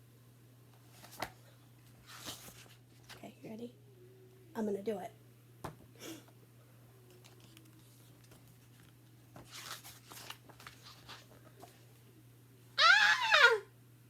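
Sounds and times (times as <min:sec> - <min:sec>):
low steady hum: 0:00.0 - 0:14.0
paper rustling: 0:00.8 - 0:03.2, 0:07.1 - 0:11.9.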